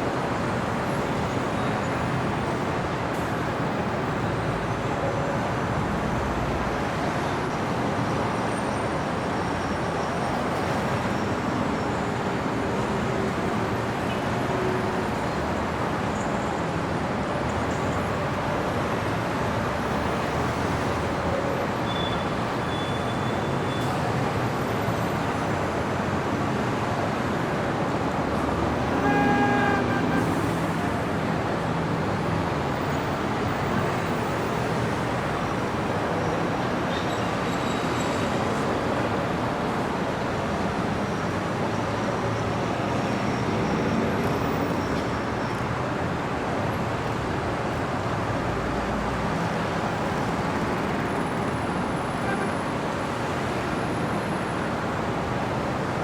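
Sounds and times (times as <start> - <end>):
cars passing: 25.1 - 36.0
vehicle horn: 28.7 - 31.0.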